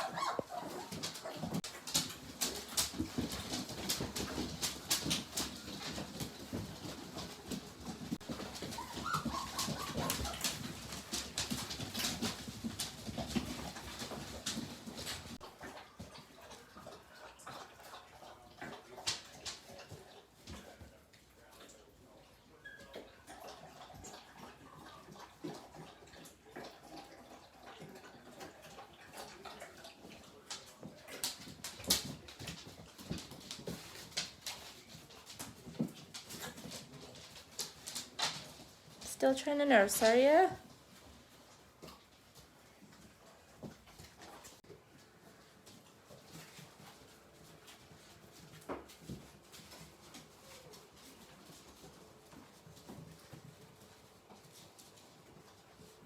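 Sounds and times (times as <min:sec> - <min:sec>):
puppy whining: 0:00.0 - 0:01.6, 0:08.2 - 0:11.6, 0:22.5 - 0:24.7
puppies whimpering and grunting: 0:00.0 - 0:20.4, 0:21.6 - 0:31.2.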